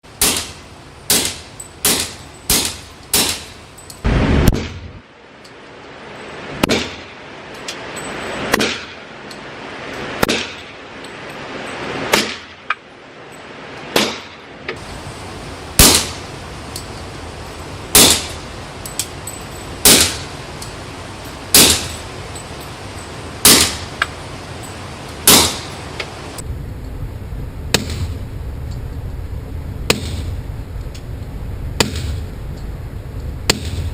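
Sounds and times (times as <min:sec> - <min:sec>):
suppressed pistol shots: 0:00.2 - 0:03.6, 0:15.8 - 0:16.2, 0:17.9 - 0:18.4, 0:19.8 - 0:20.3, 0:21.5 - 0:22.0, 0:23.4 - 0:23.9, 0:25.2 - 0:25.7.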